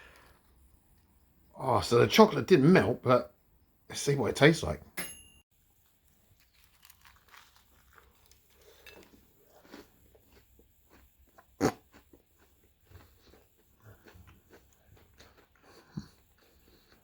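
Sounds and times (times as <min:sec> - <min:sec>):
person chewing donut: 0:05.9 - 0:17.0.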